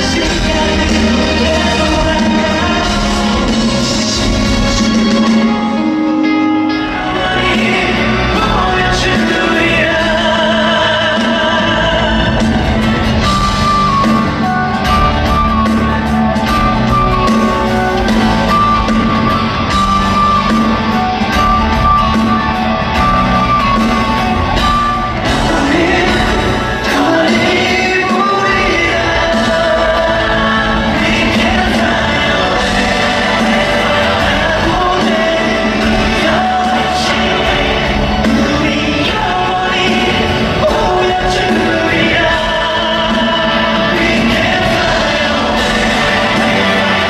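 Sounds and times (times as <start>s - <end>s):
person singing over a band: 0.0s - 47.0s
audience shouting: 11.8s - 47.0s.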